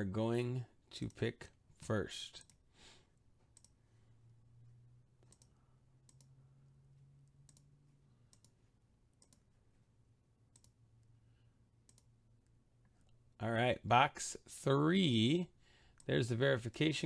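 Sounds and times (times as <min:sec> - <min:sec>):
faint low hum: 0:00.0 - 0:17.0
computer mouse clicks: 0:03.5 - 0:03.8, 0:05.2 - 0:06.4, 0:07.3 - 0:07.7, 0:08.3 - 0:08.6, 0:09.2 - 0:09.5, 0:10.5 - 0:10.8, 0:11.8 - 0:12.1.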